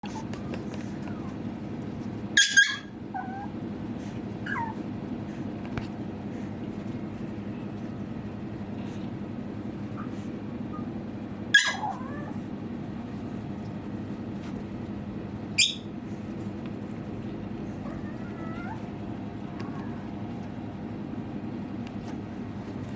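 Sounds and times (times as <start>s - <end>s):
puppy whimpering: 0.0s - 1.5s, 2.4s - 3.6s, 4.4s - 4.9s, 11.6s - 12.4s, 15.6s - 15.9s, 17.8s - 20.2s
steady low hum: 0.0s - 22.9s
puppy yipping: 2.4s - 3.5s, 4.4s - 4.8s, 11.5s - 12.4s, 15.6s - 15.9s, 17.8s - 18.9s.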